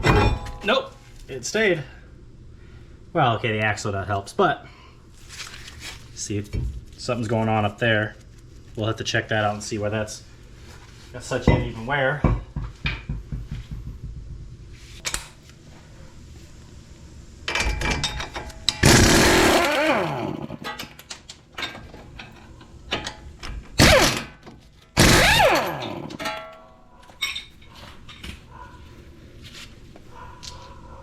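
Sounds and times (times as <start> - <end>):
power tool motor spinning: 18.8 - 20.6, 23.8 - 24.3, 25.0 - 26.2.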